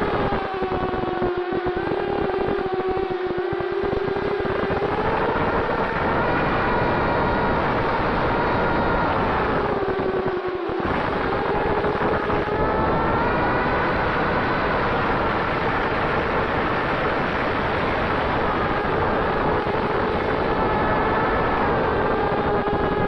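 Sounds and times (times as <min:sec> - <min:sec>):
drone motors whining: 0:00.0 - 0:23.0
wind noise on microphone: 0:00.0 - 0:23.0.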